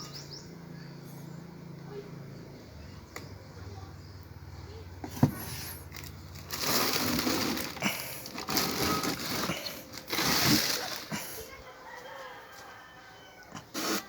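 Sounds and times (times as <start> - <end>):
packaging rustling and crinkling: 5.5 - 11.5.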